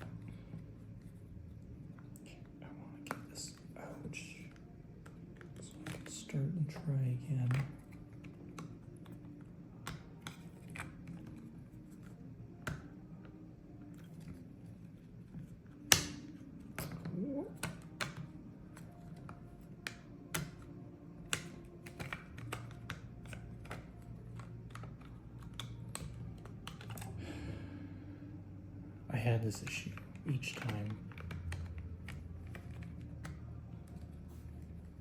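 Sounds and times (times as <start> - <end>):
sharp plastic snap: 15.9 - 17.0.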